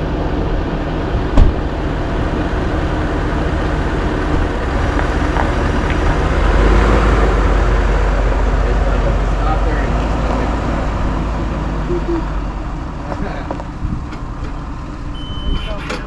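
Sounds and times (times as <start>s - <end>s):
diesel engine running: 0.0s - 16.0s
sharp knock: 1.4s - 1.6s.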